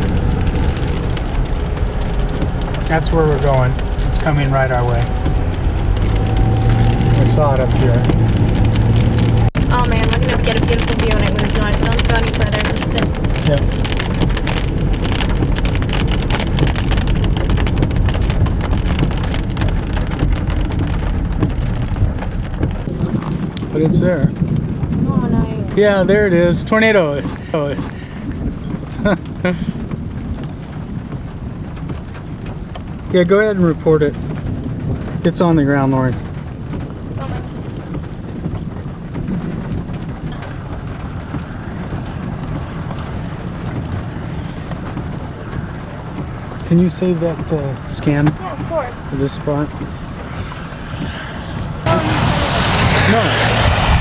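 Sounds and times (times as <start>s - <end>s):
drops ticking on a surface: 0.0s - 25.1s
heavy rain on vehicle roof: 0.0s - 54.0s
low steady rumble: 0.0s - 54.0s
wind: 0.0s - 54.0s.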